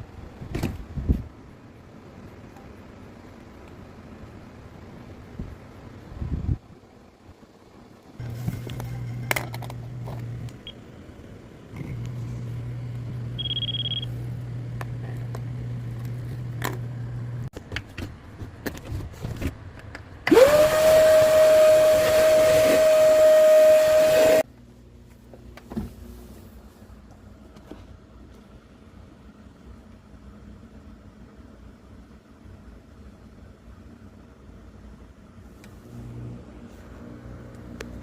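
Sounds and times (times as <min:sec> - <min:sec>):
low electric hum: 0:00.0 - 0:20.4, 0:24.4 - 0:38.0
short electronic beep: 0:13.4 - 0:14.1
electric motor whining: 0:20.3 - 0:24.4.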